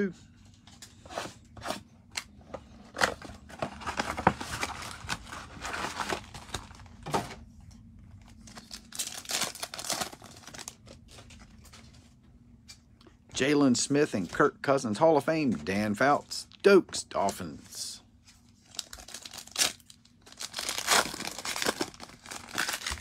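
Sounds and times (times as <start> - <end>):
foil packs crinkling: 3.5 - 7.2, 8.2 - 11.7, 18.6 - 23.0
cardboard and wrapper tearing: 3.7 - 6.9, 8.5 - 10.8, 18.7 - 23.0.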